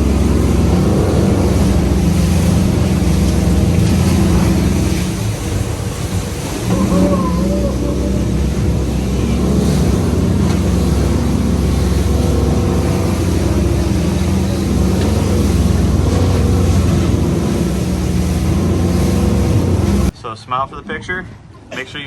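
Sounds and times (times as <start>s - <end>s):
boat engine running: 0.0s - 20.2s
steady rushing noise: 0.0s - 20.2s.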